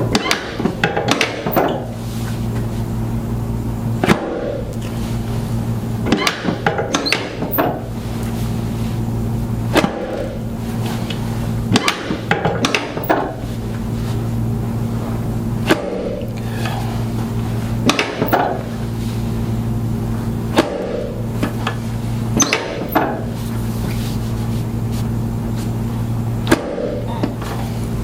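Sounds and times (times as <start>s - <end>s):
sharp clicks and knocks: 0.0s - 1.9s, 6.0s - 7.9s, 11.1s - 13.4s, 22.4s - 23.3s
low electrical hum: 0.0s - 28.0s.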